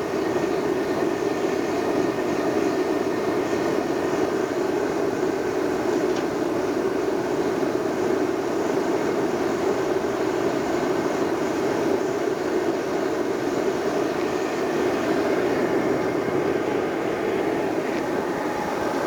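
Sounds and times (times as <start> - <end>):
gas forge burner rushing: 0.0 - 19.0.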